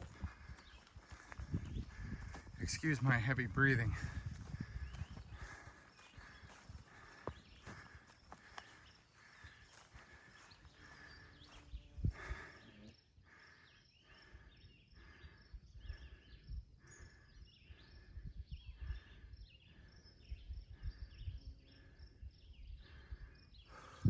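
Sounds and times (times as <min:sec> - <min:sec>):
footsteps on grass: 0:00.0 - 0:12.5
birds chirping: 0:00.0 - 0:24.0.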